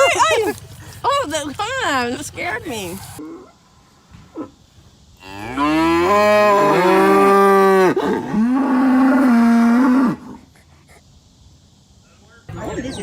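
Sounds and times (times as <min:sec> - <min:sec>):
cow mooing loudly: 0:05.2 - 0:10.3.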